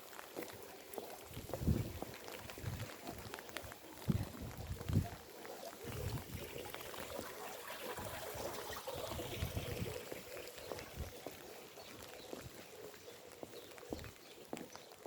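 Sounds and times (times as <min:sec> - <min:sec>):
footsteps on wet ground: 0:00.0 - 0:15.0
steady rain: 0:00.0 - 0:15.0
water trickling and pouring: 0:00.0 - 0:15.0.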